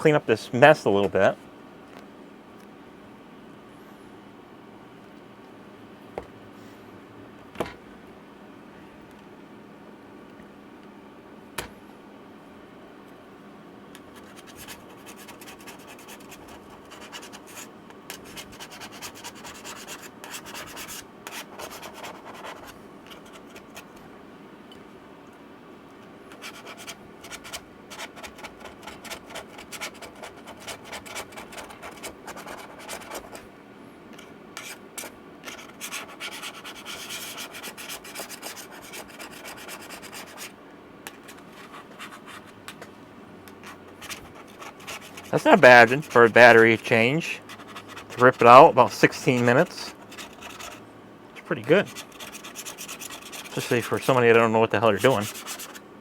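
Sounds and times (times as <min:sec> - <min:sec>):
scraping and rubbing strokes: 0:54.9 - 0:55.8.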